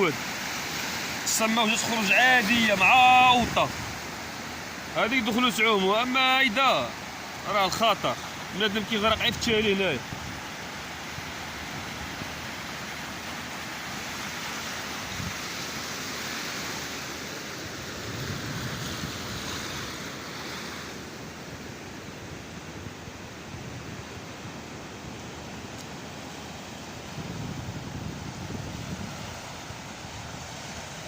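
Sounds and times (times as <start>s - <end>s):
sea surf washing on shore: 0.0s - 31.0s.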